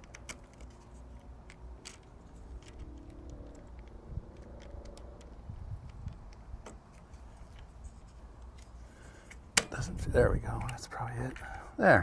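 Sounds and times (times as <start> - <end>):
key clicking and rattling in lock: 0.0 - 7.7
faint steady hum: 0.0 - 12.0.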